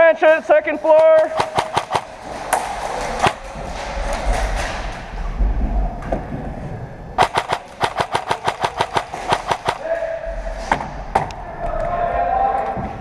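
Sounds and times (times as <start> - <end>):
airsoft gun shots: 1.3 - 2.2, 7.2 - 9.9.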